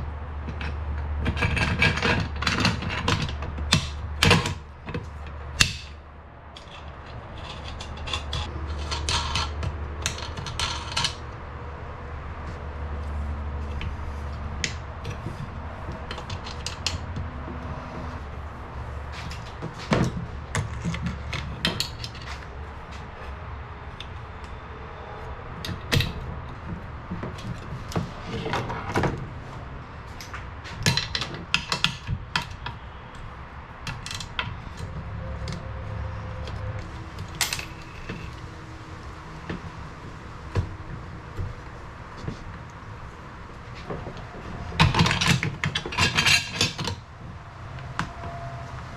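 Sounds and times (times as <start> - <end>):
clicks and knocks of metal tools: 0.4 - 11.4, 37.2 - 38.4, 43.7 - 47.0.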